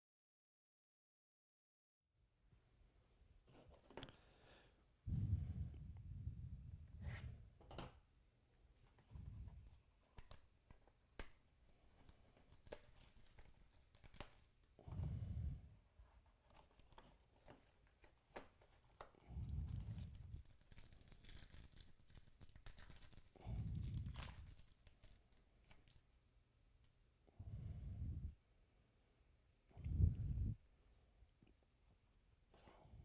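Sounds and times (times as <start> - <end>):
low breath puffs: 4.0 - 7.5, 14.8 - 15.8, 23.4 - 24.4, 27.3 - 28.4, 29.7 - 30.6
packaging tearing and crinkling: 10.1 - 14.5, 19.7 - 26.0.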